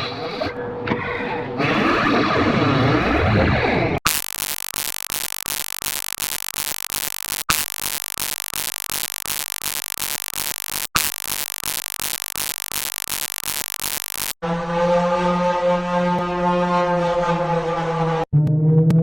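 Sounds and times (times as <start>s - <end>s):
pulsing buzzing alarm tone: 4.1s - 14.4s.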